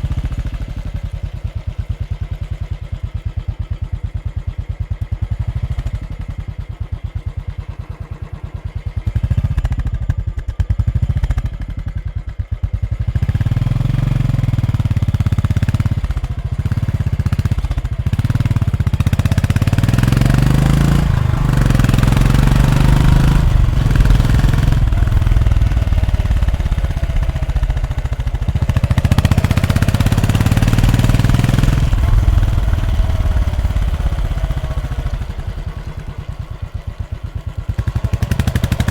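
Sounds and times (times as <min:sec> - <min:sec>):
motorcycle engine idling and revving: 0:00.0 - 0:38.9.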